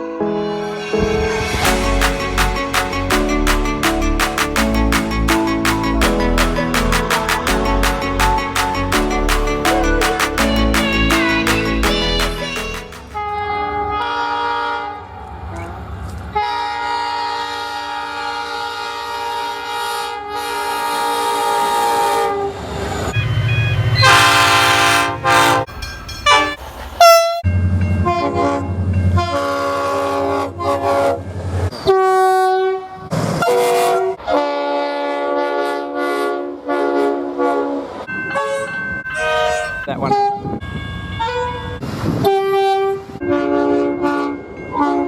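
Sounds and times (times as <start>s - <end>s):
train horn blasts: 13.2s - 22.5s, 23.1s - 27.4s, 28.0s - 38.6s, 39.2s - 45.0s.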